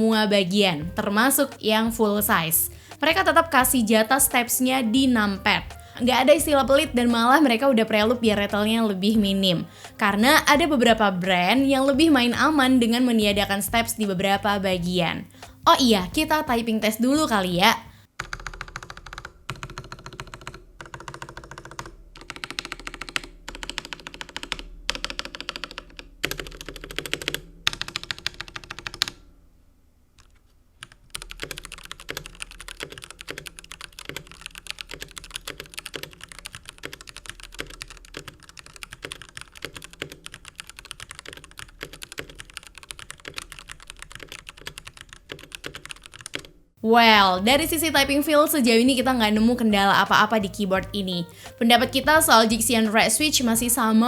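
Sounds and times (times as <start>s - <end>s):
mechanical keyboard typing: 18.2s - 29.2s, 30.2s - 46.5s.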